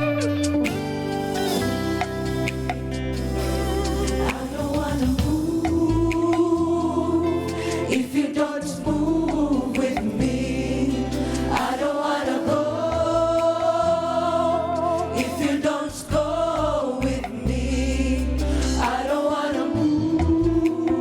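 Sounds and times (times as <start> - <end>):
low bass notes: 0.0 - 7.9, 8.8 - 11.9, 12.5 - 15.3, 16.0 - 19.1, 19.8 - 21.0
choir singing: 3.2 - 21.0.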